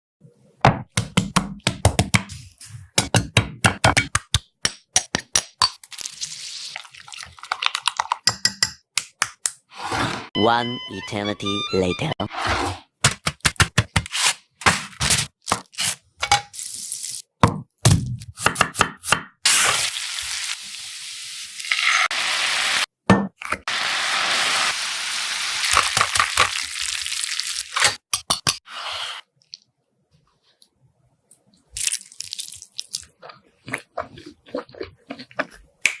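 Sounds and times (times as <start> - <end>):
chicken frying in hot oil: 19.7 - 22.9, 23.7 - 27.8.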